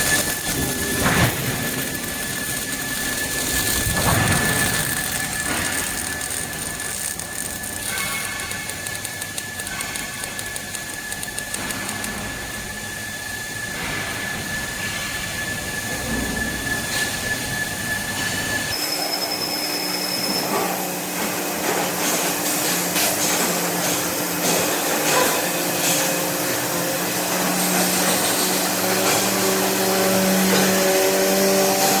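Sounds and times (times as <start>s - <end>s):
arc welding crackling hiss: 0.0s - 18.8s
machinery hum and whine: 0.0s - 32.0s.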